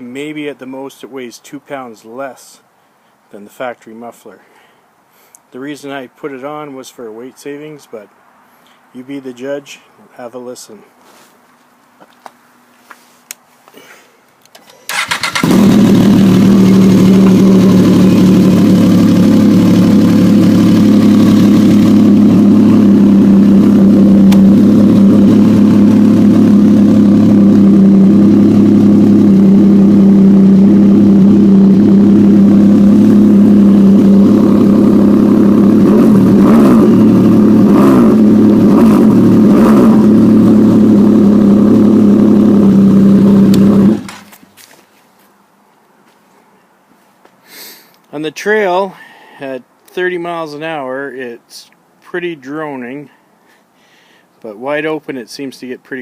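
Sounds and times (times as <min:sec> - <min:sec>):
snowmobile engine running: 0:15.4 - 0:44.1.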